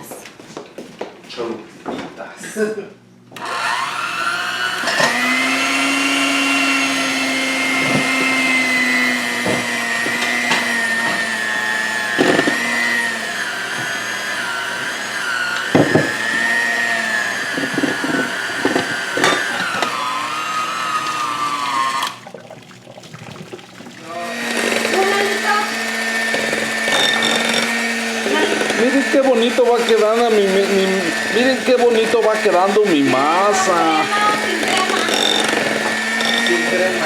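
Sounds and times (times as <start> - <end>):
blender motor whine: 3.3 - 22.2, 24.0 - 37.0
sharp knocks: 15.7 - 16.3.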